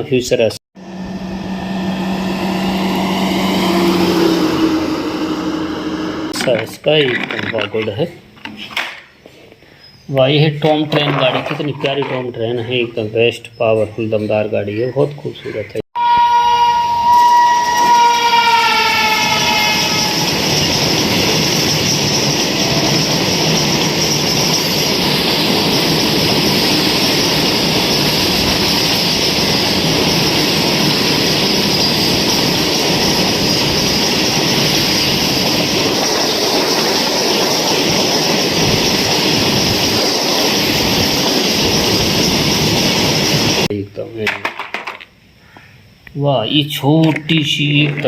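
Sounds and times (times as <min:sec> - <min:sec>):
train horn: 0:00.8 - 0:06.3, 0:16.0 - 0:20.5
train rumbling on rails: 0:00.8 - 0:06.6, 0:16.0 - 0:43.7.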